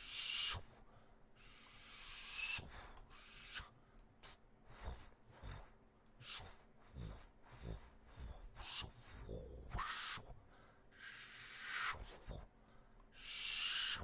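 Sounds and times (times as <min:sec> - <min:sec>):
breathy mouth hiss: 0:01.4 - 0:10.2, 0:11.0 - 0:12.5.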